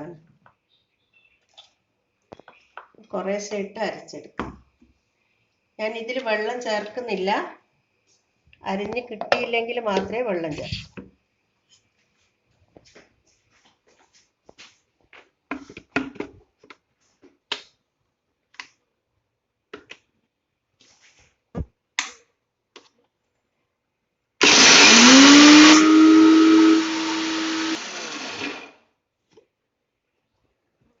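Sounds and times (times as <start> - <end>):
mixer grinder whining: 24.4 - 28.8.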